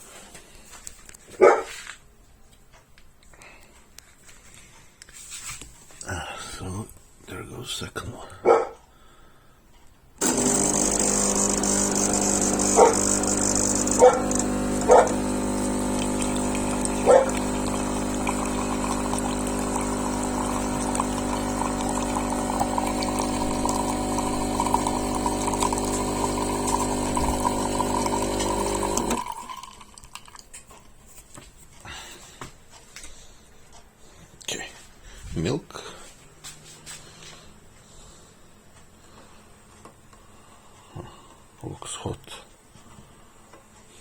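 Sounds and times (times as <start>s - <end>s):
dog barking: 1.4s - 1.8s, 8.4s - 8.8s, 12.7s - 13.0s, 14.0s - 15.2s, 17.0s - 17.4s
espresso machine pump humming: 10.2s - 30.2s.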